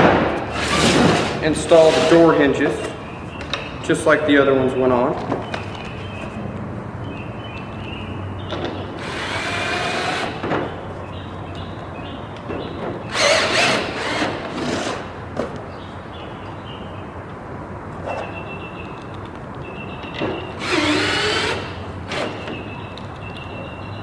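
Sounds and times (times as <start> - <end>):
power drill driving screws: 0.5 - 2.3, 9.0 - 10.4, 13.1 - 15.0, 20.6 - 22.5.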